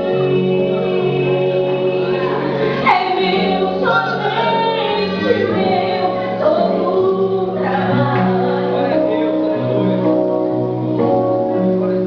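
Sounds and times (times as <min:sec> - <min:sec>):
woman singing a hymn: 0:00.0 - 0:09.4
instrumental accompaniment: 0:00.0 - 0:12.0.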